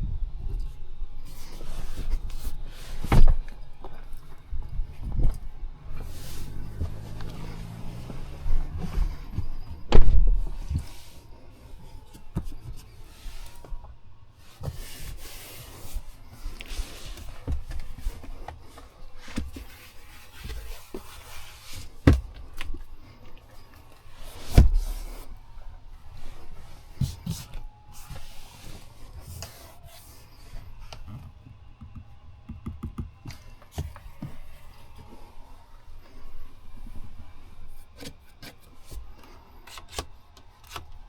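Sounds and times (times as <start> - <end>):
soft rubbing and scraping: 0.5 - 31.6
deep thud: 24.5 - 25.2.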